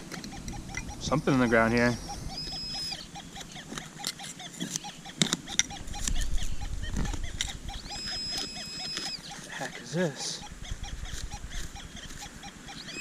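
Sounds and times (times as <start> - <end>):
metal detector target tone: 0.0 - 11.2
metal detector iron grunts: 0.0 - 12.0.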